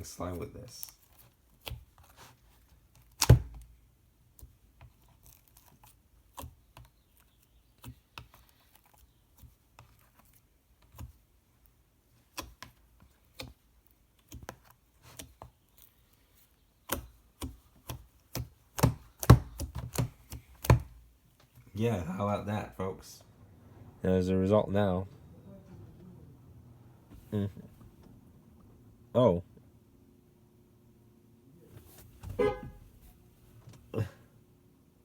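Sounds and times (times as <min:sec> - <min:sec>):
thump: 0:32.1 - 0:32.9.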